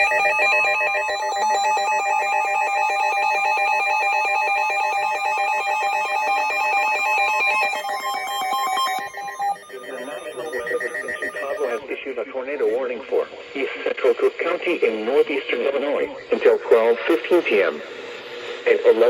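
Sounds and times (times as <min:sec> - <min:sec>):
harsh two-tone alert signal: 0:00.0 - 0:11.8.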